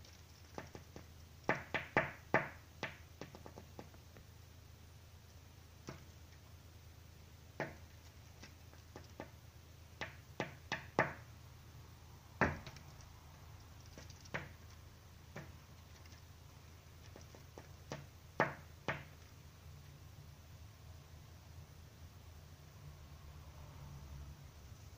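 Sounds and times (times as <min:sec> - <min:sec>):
bird pecking at window glass: 0:00.0 - 0:04.3, 0:05.2 - 0:06.5, 0:07.5 - 0:11.3, 0:12.4 - 0:19.5.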